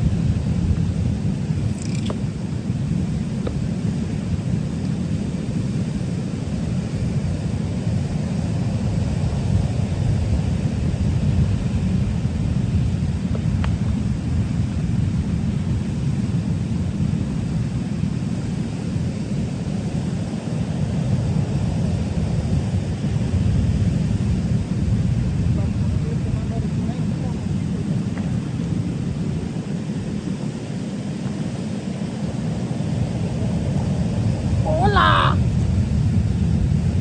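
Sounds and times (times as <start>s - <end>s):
small click: 1.6s - 2.2s
wind buffeting microphone: 21.3s - 37.0s.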